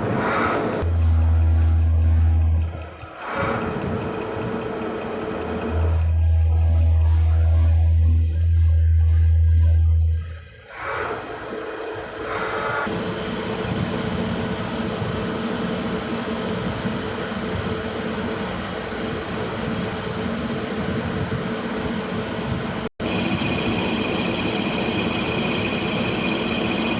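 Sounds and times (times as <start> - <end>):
high steady whine: 12.0 - 26.9
milling machine running: 12.9 - 26.9.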